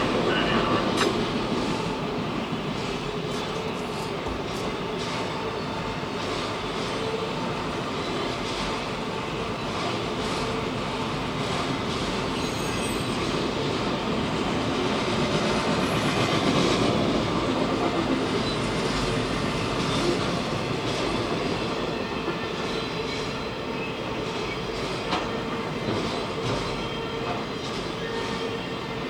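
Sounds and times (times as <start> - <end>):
freight train cars rolling: 0.0 - 29.0
wheel squeal: 12.3 - 13.2.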